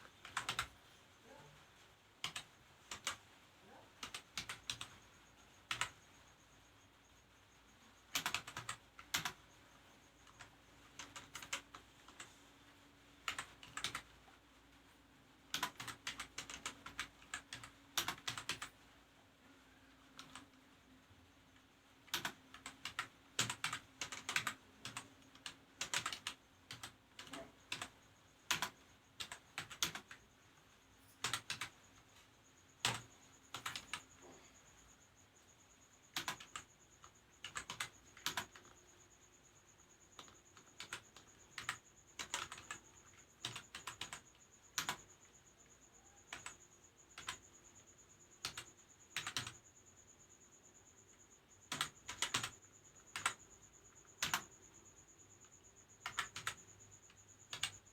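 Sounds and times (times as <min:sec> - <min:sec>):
typing on computer keyboard: 0:00.0 - 0:01.6, 0:02.2 - 0:06.3, 0:07.8 - 0:12.4, 0:13.2 - 0:14.3, 0:15.5 - 0:18.8, 0:20.0 - 0:20.6, 0:22.0 - 0:30.4, 0:31.0 - 0:32.2, 0:32.8 - 0:34.4, 0:36.1 - 0:39.0, 0:39.8 - 0:47.6, 0:48.3 - 0:49.7, 0:51.6 - 0:57.9.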